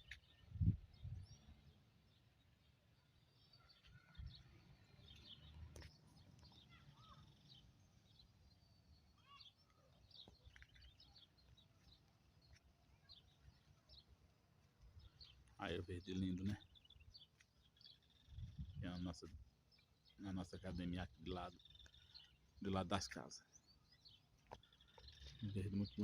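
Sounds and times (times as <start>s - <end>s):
birds chirping and whistling: 23.1s - 26.0s.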